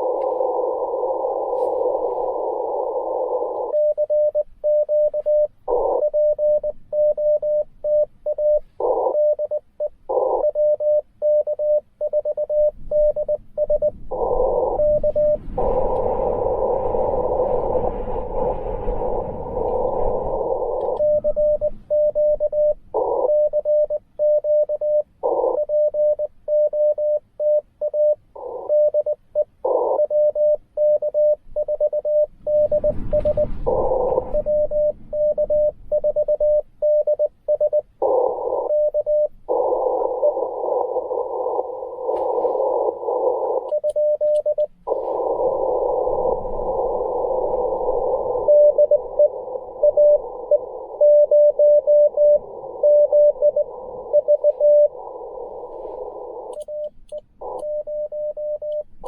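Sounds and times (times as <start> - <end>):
hissing radio band noise: 0.0 - 4.3, 5.1 - 6.6, 8.4 - 11.0, 13.0 - 23.8, 24.6 - 26.1, 28.3 - 30.6, 32.5 - 35.5, 37.8 - 59.0
morse code sidetone beeps: 0.0 - 18.5, 19.3 - 59.0.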